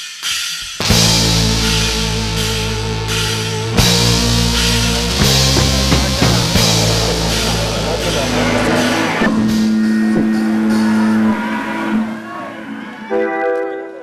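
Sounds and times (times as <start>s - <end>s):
distorted rock music: 0.8s - 13.0s.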